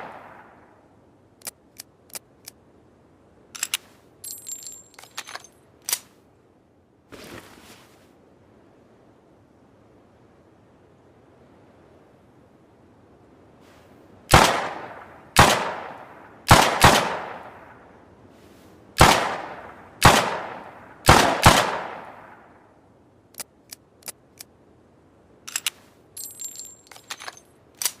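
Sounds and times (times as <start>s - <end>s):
echoing gunshots: 0.0s - 0.6s, 14.3s - 17.8s, 19.0s - 22.6s
small metallic clicks and jingles: 3.5s - 6.2s, 25.4s - 28.0s
light clicks: 23.3s - 24.5s.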